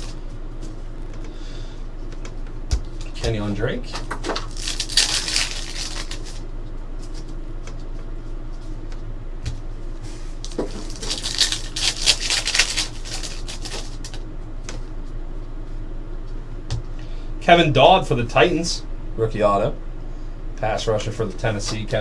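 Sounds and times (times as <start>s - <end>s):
steady low hum: 0.0s - 22.0s
paper wrappers crinkling: 4.3s - 6.4s, 10.4s - 14.2s.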